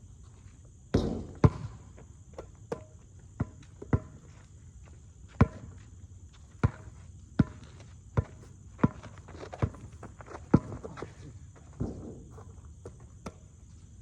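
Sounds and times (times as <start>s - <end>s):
basketball bouncing: 1.0s - 1.7s.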